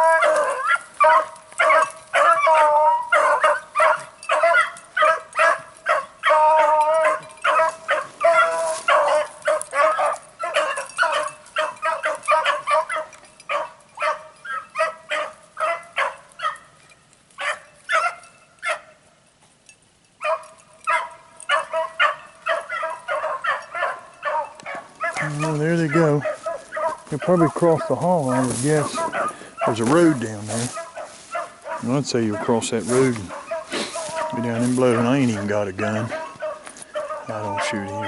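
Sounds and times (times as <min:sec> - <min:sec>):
hounds baying: 0:00.0 - 0:19.1, 0:20.2 - 0:38.0.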